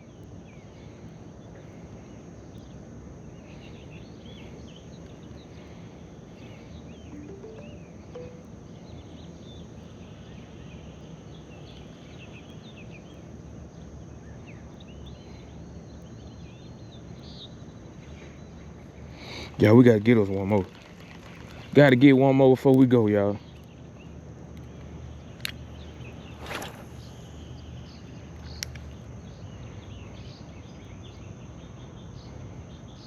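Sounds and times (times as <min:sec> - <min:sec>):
high-pitched drone: 0:07.2 - 0:08.7.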